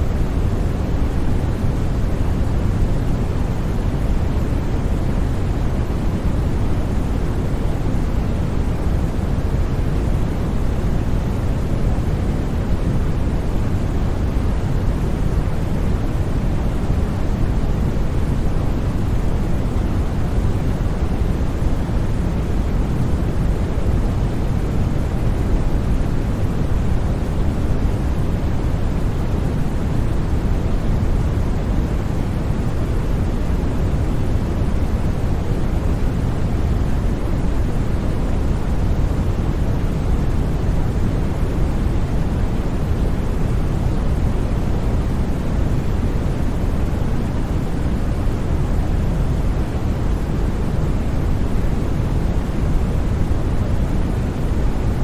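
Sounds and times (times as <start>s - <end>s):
deep steady white noise: 0.0s - 55.0s.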